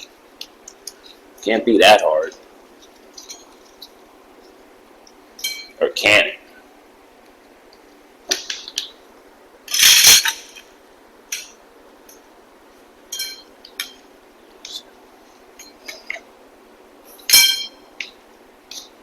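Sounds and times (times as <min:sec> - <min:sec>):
metal poles clinking and clicking: 0:00.0 - 0:04.0, 0:05.1 - 0:05.8, 0:09.7 - 0:10.7, 0:11.3 - 0:12.2, 0:13.1 - 0:14.0, 0:17.1 - 0:19.0
poles clattering: 0:00.0 - 0:05.8, 0:08.3 - 0:09.0, 0:09.7 - 0:12.2, 0:13.1 - 0:14.9, 0:17.1 - 0:19.0.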